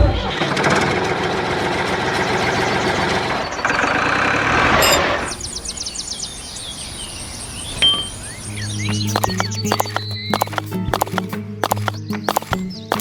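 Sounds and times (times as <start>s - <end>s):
motor running: 9.0s - 13.0s.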